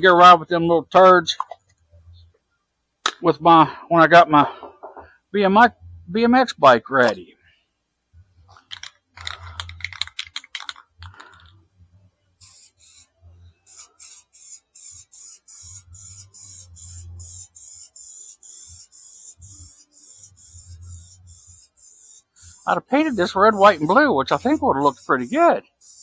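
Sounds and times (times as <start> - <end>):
spray paint hissing pulses: 12.4 - 26.0.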